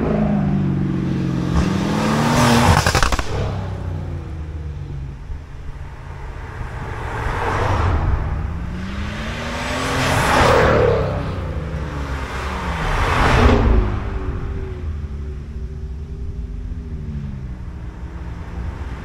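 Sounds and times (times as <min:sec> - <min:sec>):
sports car engines accelerating past: 0:06.0 - 0:19.0.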